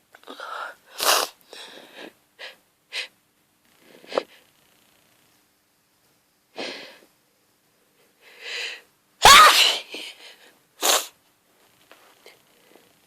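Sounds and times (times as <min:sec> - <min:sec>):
woman gasping and sneezing: 0:09.2 - 0:11.1.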